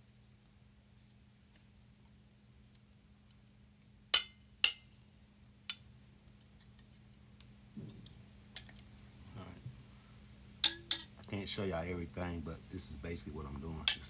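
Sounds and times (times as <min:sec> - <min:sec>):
hammer striking metal: 0:04.2 - 0:04.9, 0:10.6 - 0:11.1.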